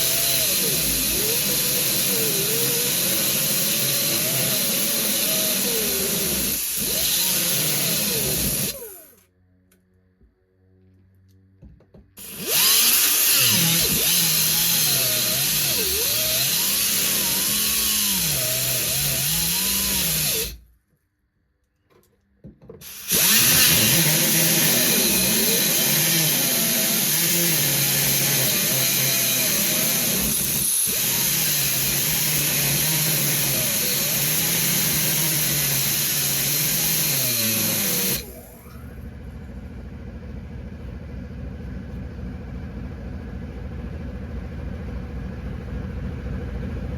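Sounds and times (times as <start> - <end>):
cut-off tool cutting sheet metal: 12.2 - 20.6, 22.8 - 38.3
low steady rumble: 38.6 - 46.9.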